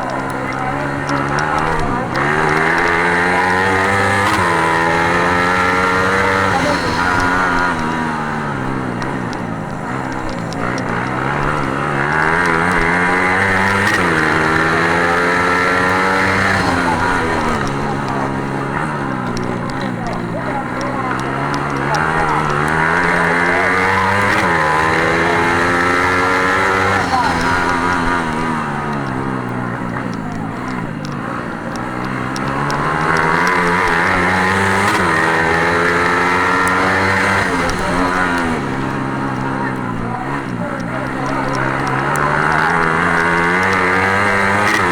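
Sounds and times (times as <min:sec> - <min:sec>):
racing engine accelerating: 0:00.0 - 0:44.9.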